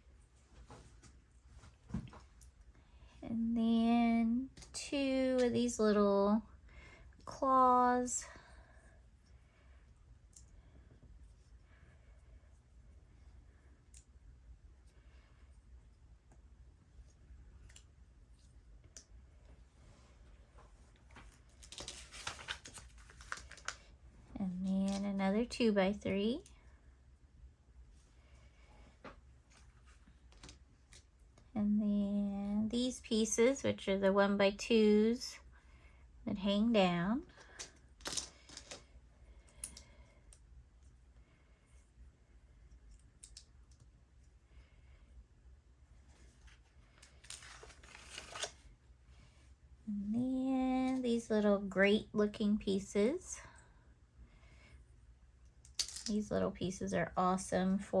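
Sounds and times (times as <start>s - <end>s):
plastic pieces clicking: 37.6s - 38.8s.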